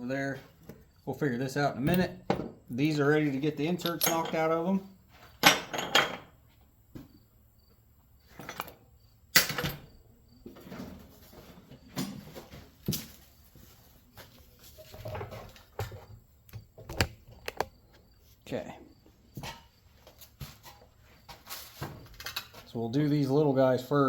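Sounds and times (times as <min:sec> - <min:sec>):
metal parts knocking and clinking: 0:01.8 - 0:02.5, 0:03.6 - 0:04.6, 0:05.4 - 0:06.3, 0:08.3 - 0:09.9.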